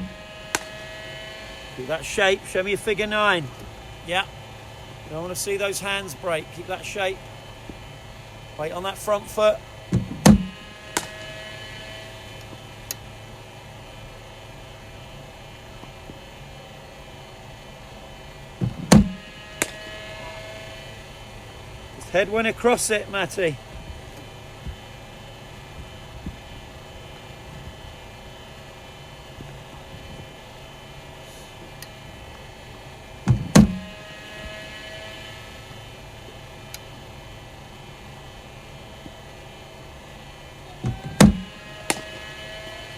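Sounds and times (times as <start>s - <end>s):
bowling machine humming: 0.0s - 42.9s
ball fired thump: 9.9s - 11.2s, 18.6s - 19.8s, 33.3s - 33.9s, 41.2s - 42.0s.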